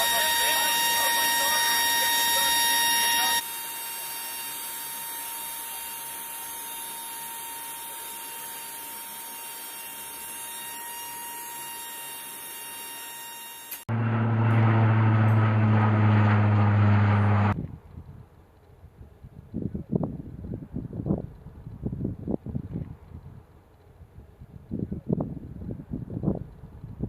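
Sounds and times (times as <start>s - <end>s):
loud low engine drone: 0.0s - 3.4s, 13.9s - 17.6s.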